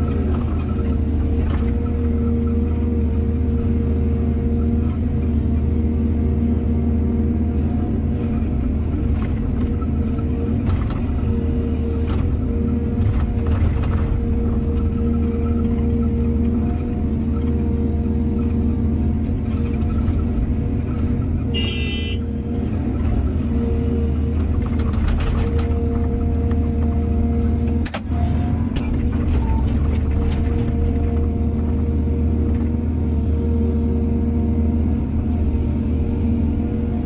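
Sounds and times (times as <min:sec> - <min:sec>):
heavy diesel engine rumbling: 0:00.0 - 0:37.0
knocks and clatters: 0:24.4 - 0:26.9.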